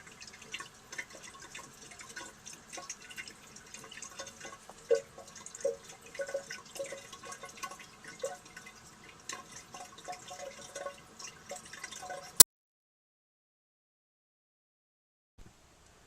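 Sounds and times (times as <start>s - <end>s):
water dripping in toilet bowl: 0.0s - 12.4s.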